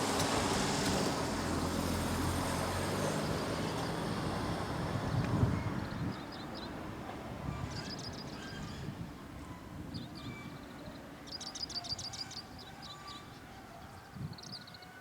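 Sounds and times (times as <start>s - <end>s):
train rumbling: 0.0s - 9.6s.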